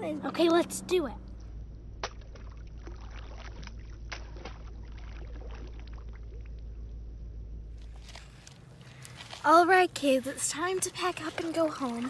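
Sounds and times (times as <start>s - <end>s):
steady low rumble: 0.0s - 10.7s
water sloshing and splashing: 2.0s - 7.1s, 7.7s - 12.0s.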